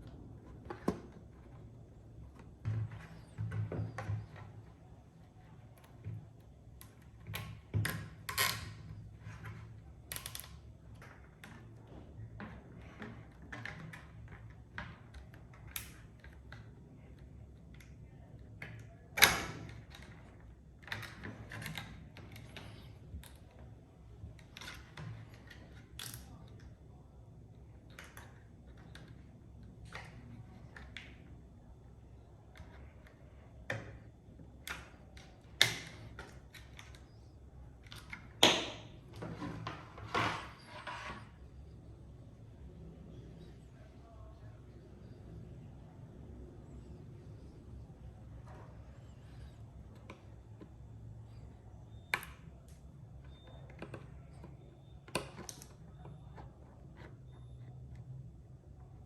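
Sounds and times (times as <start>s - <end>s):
plastic parts clicking and knocking: 49.2s - 58.0s.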